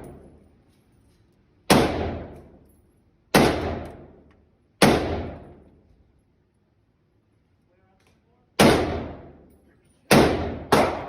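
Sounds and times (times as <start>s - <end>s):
gunshots with ringing tail: 1.7s - 2.6s, 3.3s - 4.2s, 4.8s - 5.6s, 8.6s - 9.4s, 10.1s - 11.0s.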